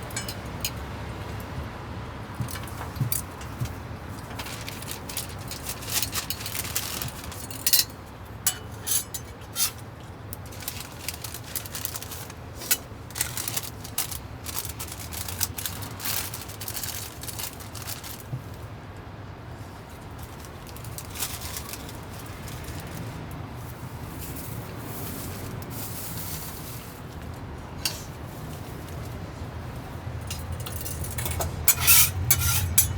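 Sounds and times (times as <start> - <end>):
kitchen clicks and clinks: 0.0 - 0.8, 4.4 - 9.8, 30.2 - 32.9.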